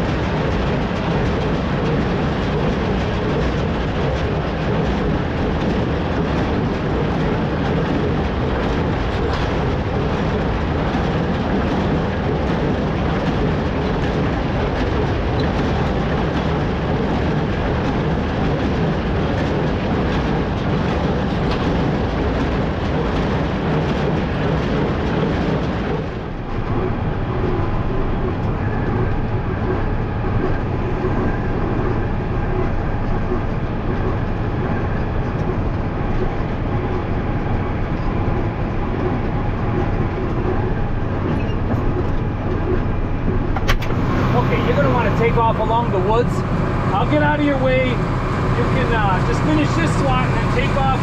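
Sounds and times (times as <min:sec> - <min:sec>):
tractor running: 0:00.0 - 0:51.0
hay baler working: 0:24.0 - 0:51.0.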